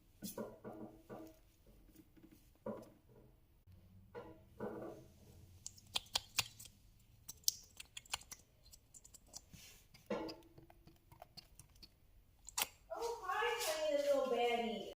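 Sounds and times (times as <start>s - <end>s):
slime clicking and popping: 5.6s - 9.5s, 10.4s - 12.8s.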